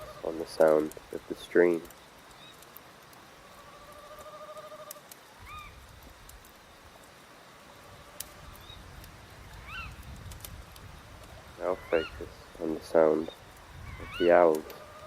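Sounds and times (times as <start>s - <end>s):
wind: 0.0s - 15.0s
wood fire crackling: 0.0s - 15.0s
owl trilling: 3.4s - 5.8s, 9.6s - 10.0s, 13.8s - 15.0s
short bird calls: 11.6s - 12.4s.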